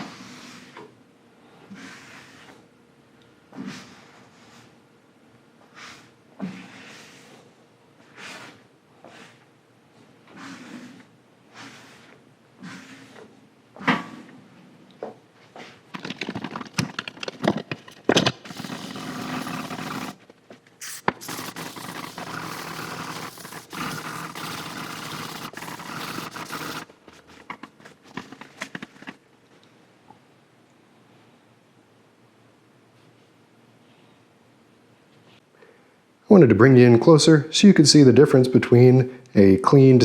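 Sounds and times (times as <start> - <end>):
scouring pad scraping metal: 10.3 - 14.3, 18.5 - 20.2, 21.2 - 29.2
knocks and clatter: 15.9 - 20.2.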